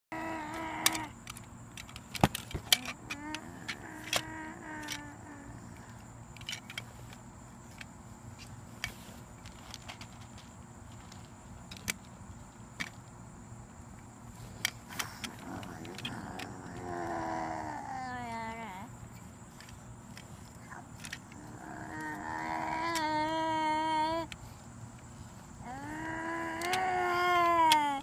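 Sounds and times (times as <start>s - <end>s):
steady low hum: 0.1s - 28.0s
toddler imitating a car: 2.7s - 5.8s, 20.7s - 24.4s, 25.6s - 28.0s.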